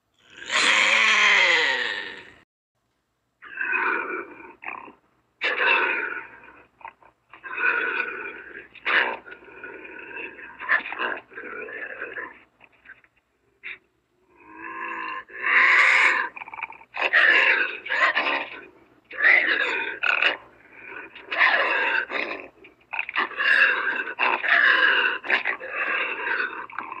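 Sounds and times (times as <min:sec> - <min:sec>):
bobcat calling: 0:00.2 - 0:02.4.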